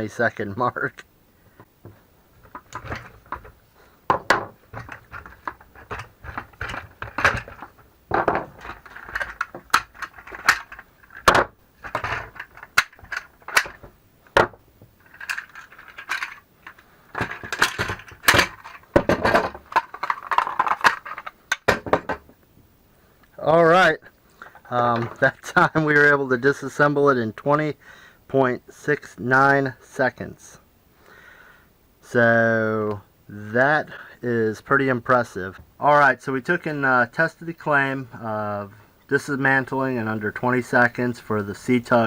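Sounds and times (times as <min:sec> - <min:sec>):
trolley parts clicking and rattling: 0:04.4 - 0:13.9, 0:15.0 - 0:21.7.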